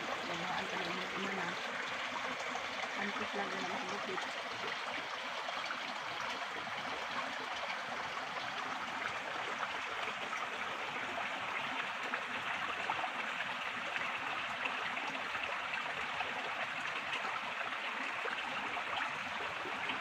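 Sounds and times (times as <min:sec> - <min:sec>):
spring water flowing: 0:00.0 - 0:20.0.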